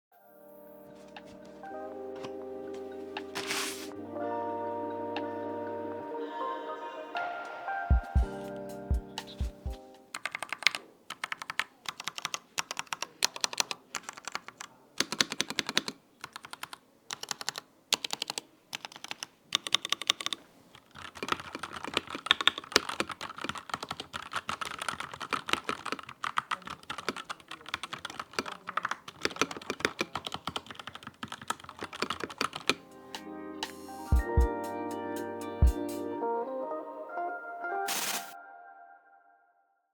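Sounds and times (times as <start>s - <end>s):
mechanical keyboard typing: 9.2s - 32.8s.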